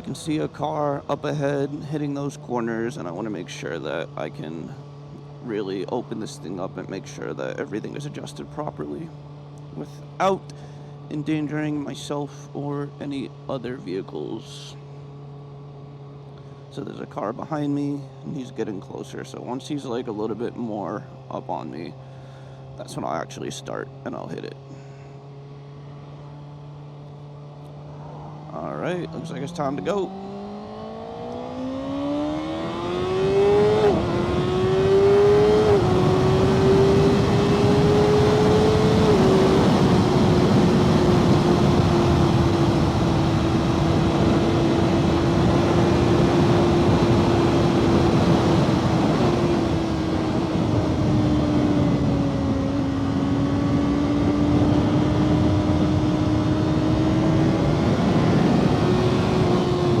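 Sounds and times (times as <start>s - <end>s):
motorcycle engine accelerating: 0.0s - 60.0s
heavy wind noise: 32.2s - 60.0s.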